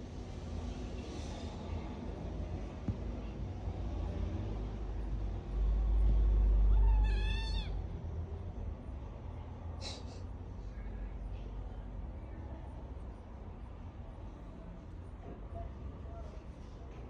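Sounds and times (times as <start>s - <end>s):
cat meowing: 6.7s - 7.8s.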